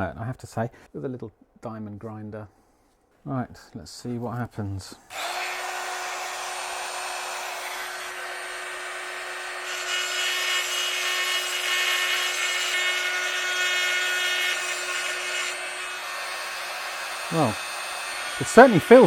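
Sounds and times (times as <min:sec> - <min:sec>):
grinder grinding metal: 0:05.1 - 0:19.0
rotary tool whining: 0:05.1 - 0:19.0.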